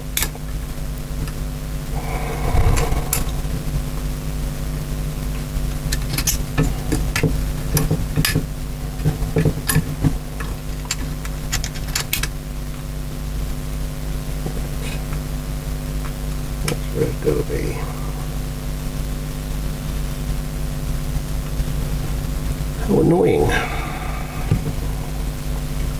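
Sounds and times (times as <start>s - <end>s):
steady background hum: 0.0s - 25.9s.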